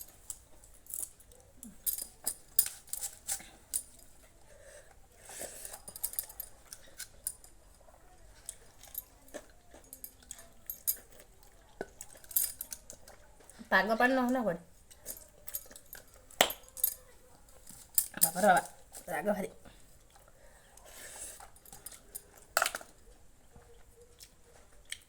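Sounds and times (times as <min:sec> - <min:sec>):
dishes clicking and clinking: 0:21.4 - 0:23.0.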